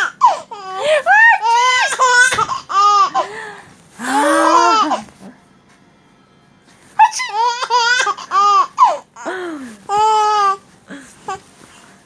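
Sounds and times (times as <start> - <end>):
baby squealing: 4.1 - 5.0.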